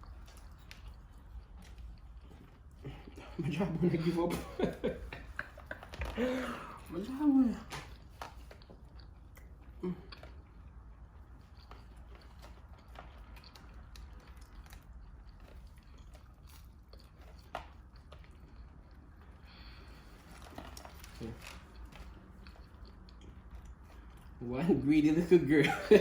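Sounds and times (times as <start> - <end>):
chewing and biting food: 0.0 - 4.1, 7.8 - 24.4.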